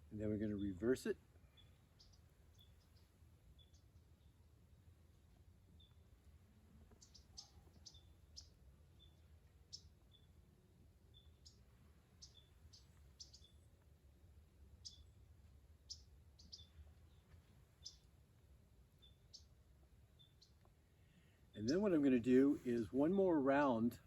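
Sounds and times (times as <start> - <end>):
faint high bird chirps: 0.4 - 4.5, 5.3 - 13.9, 14.7 - 18.2, 19.0 - 21.8.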